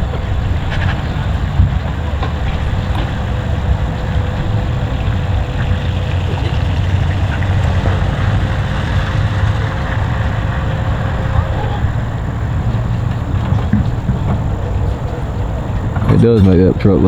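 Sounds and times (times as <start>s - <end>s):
large engine idling: 0.0s - 17.0s.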